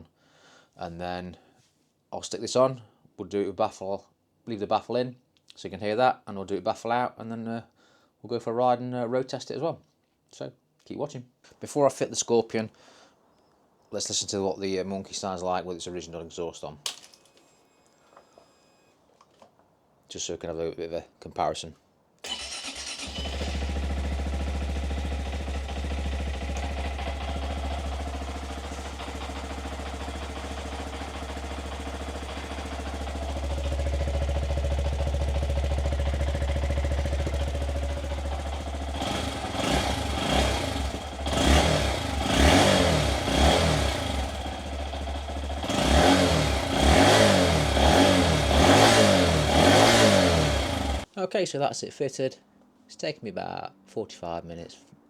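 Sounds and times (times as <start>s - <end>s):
engine throttle blips: 22.2s - 51.0s
motorcycle engine idling: 22.7s - 51.0s.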